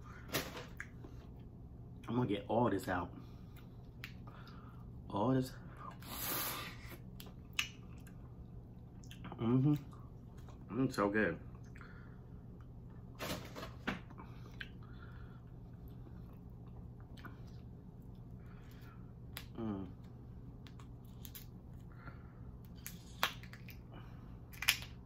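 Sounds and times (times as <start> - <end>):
low steady hum: 0.0 - 25.0
person humming: 19.5 - 20.0
eating smacks and clicks: 22.7 - 23.9.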